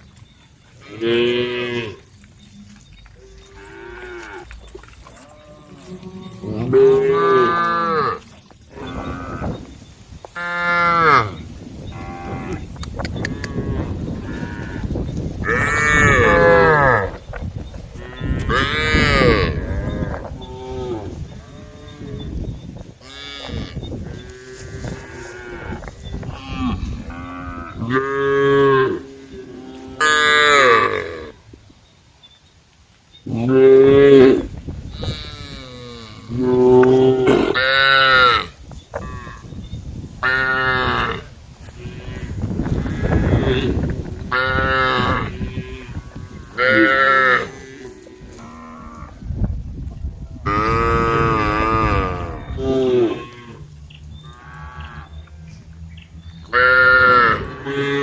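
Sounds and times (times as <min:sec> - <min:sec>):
cows mooing: 0:00.8 - 0:09.8, 0:10.4 - 0:17.2, 0:18.0 - 0:31.4, 0:40.2 - 0:49.2, 0:50.4 - 0:55.6, 0:56.4 - 0:58.0.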